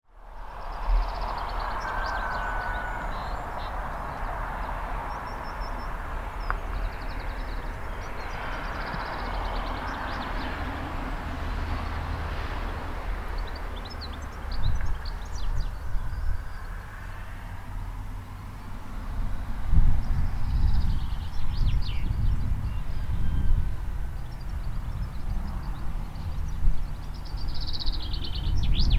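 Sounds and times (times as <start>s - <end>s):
wind gusting through vegetation: 0.1s - 28.9s
wind rumbling on microphone: 0.1s - 28.9s
small birds chirping: 0.6s - 10.8s, 13.3s - 16.9s, 20.0s - 23.5s, 24.1s - 28.9s.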